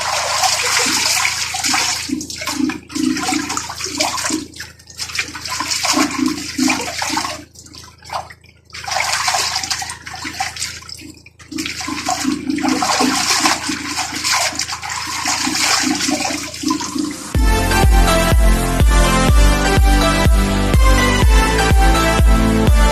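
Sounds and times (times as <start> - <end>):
water splashing in washing machine: 0.0 - 18.0
electronic music: 16.7 - 22.9.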